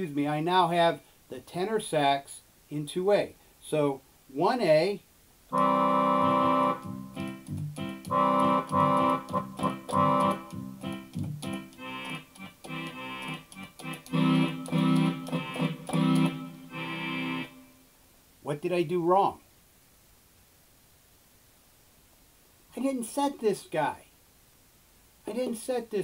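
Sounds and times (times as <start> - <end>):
digital accordion playing chords: 5.5 - 17.8.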